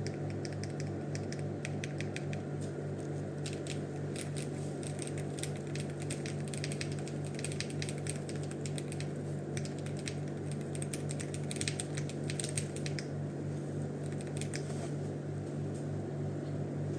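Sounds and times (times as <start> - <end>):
keyboard keystroke clacks: 0.0 - 2.4, 3.4 - 13.1, 14.0 - 14.7.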